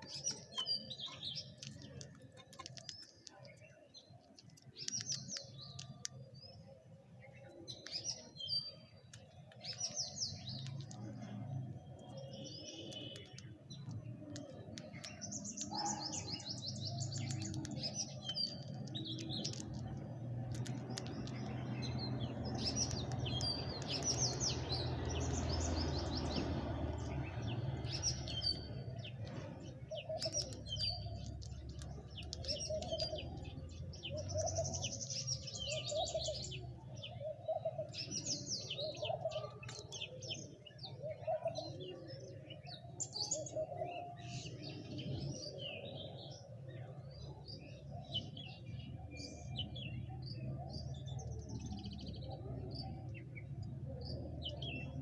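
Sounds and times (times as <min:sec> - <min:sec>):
small birds chirping: 0:00.0 - 0:55.0
pigeons cooing: 0:22.5 - 0:55.0.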